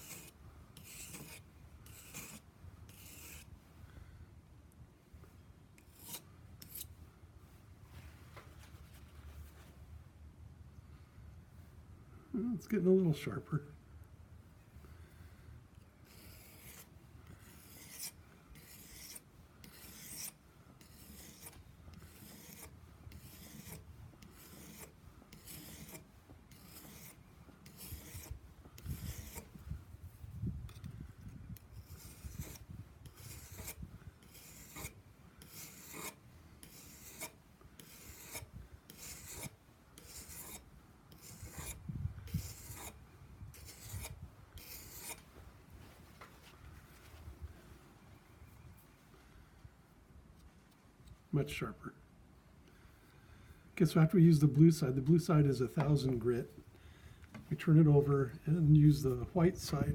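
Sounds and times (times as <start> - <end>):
knife blade rasping on whetstone: 0.0 - 3.5, 5.8 - 6.9, 16.0 - 29.5, 31.7 - 43.0, 43.6 - 45.2.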